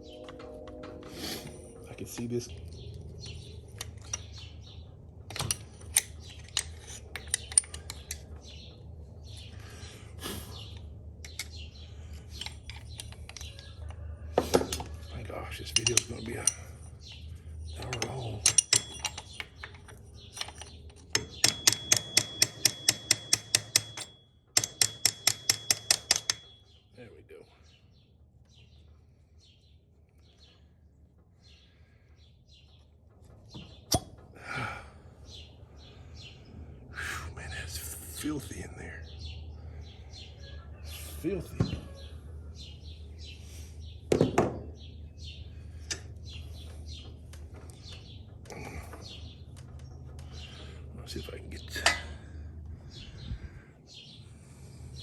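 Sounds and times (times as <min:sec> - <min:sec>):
low hum: 0:00.0 - 0:25.0
metallic clinks and taps: 0:05.3 - 0:08.6, 0:15.7 - 0:26.8.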